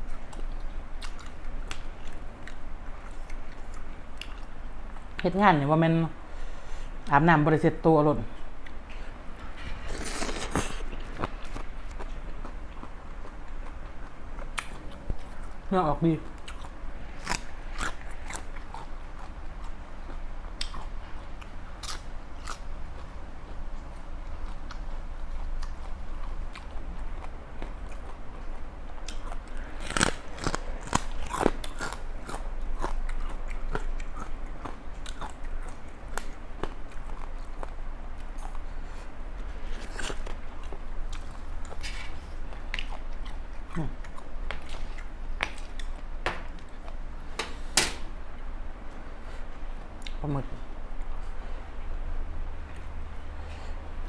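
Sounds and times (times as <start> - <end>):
close-up chewing: 0.0 - 5.3, 8.3 - 47.2
crunchy bites: 9.7 - 13.8, 29.0 - 37.7.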